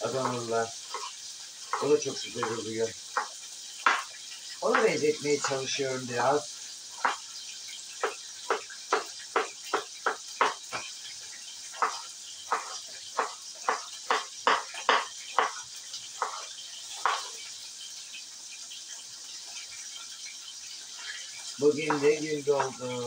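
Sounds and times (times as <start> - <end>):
knife chopping on cutting board: 1.7 - 2.6, 3.2 - 4.1, 4.7 - 5.6, 7.0 - 7.2, 8.0 - 10.9, 11.8 - 15.6, 17.0 - 17.3, 21.8 - 22.7.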